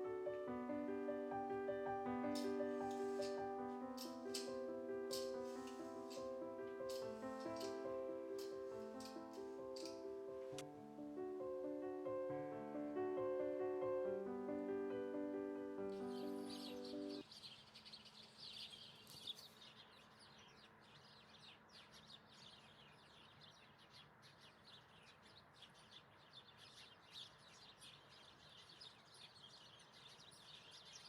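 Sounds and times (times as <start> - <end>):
piano music: 0.0 - 17.2
small birds chirping: 0.0 - 31.0.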